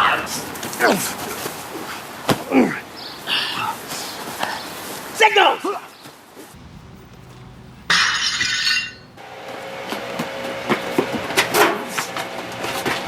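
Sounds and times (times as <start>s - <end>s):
glass breaking crash: 6.6s - 9.2s
glass clinking and rattling: 6.6s - 9.2s.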